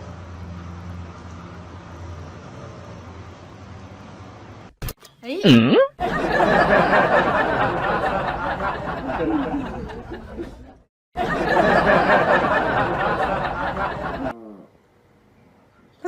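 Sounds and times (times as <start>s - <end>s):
people laughing: 6.0s - 14.4s
people chattering: 6.0s - 14.6s.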